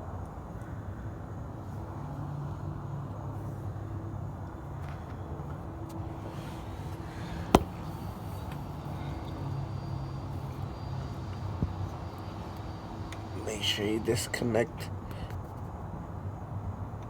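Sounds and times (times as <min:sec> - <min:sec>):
low mechanical hum: 0:00.0 - 0:17.0
sharp knock: 0:07.6 - 0:07.8.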